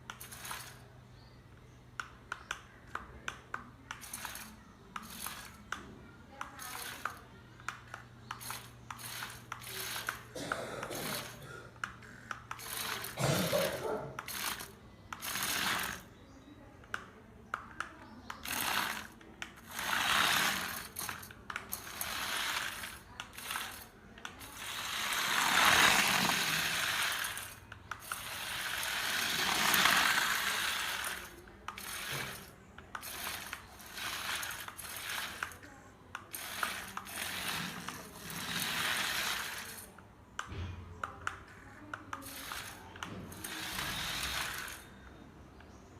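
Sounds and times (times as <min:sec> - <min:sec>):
motor whirring: 0:03.9 - 0:16.2, 0:18.2 - 0:35.6, 0:36.2 - 0:39.9, 0:42.1 - 0:44.9.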